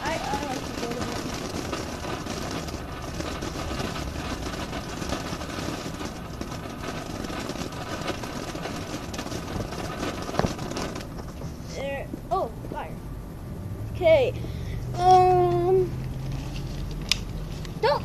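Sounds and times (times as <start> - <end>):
firework crackling spray of sparks: 0.0 - 12.9.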